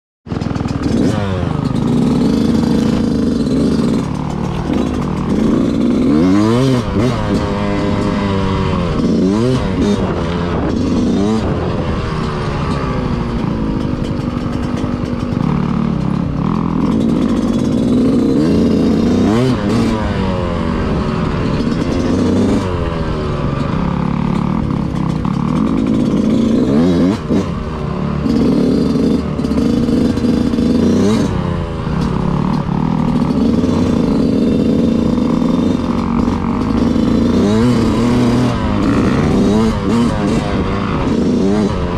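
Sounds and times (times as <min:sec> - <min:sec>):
mechanical clatter: 0:00.3 - 0:08.2, 0:12.1 - 0:19.1
dirt bike engine revving: 0:00.3 - 0:41.9.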